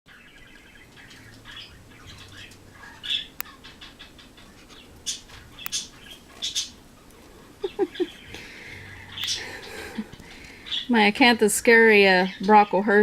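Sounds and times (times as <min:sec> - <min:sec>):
bird-like chirping calls: 0:00.1 - 0:06.8, 0:07.6 - 0:10.0.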